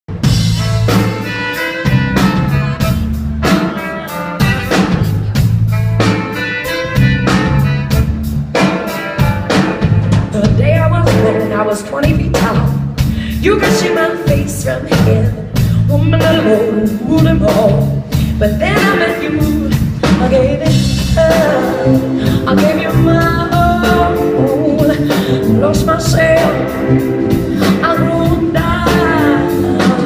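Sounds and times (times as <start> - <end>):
heavy bass line: 0.1 - 13.6, 19.5 - 30.0
live band playing instrumental: 0.1 - 30.0
steady drum beat: 0.1 - 30.0.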